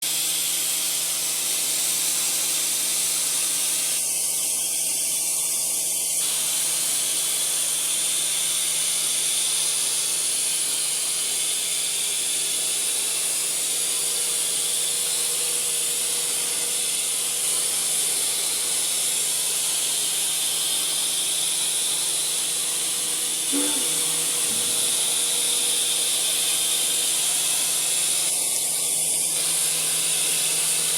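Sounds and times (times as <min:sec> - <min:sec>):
machining high hiss: 0:23.1 - 0:26.8
low machine hum: 0:23.2 - 0:26.3.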